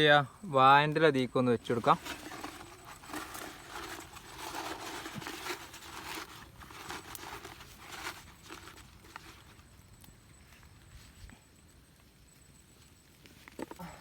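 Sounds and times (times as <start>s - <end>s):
material crinkling and rustling: 1.6s - 10.0s
light crackles: 1.6s - 14.0s.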